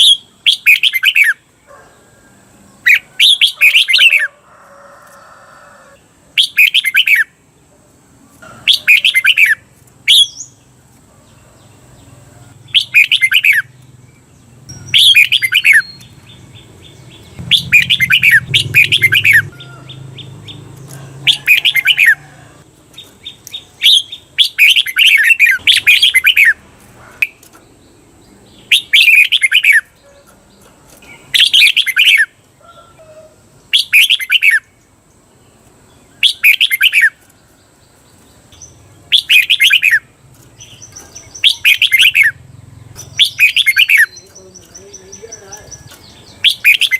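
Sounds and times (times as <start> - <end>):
bird singing whistled phrases: 6.4 - 7.3, 8.7 - 10.6, 12.8 - 13.7, 14.7 - 16.1, 17.4 - 19.5, 23.8 - 26.6, 31.4 - 32.3, 36.2 - 37.2, 39.1 - 40.1, 41.3 - 42.4, 43.2 - 46.9.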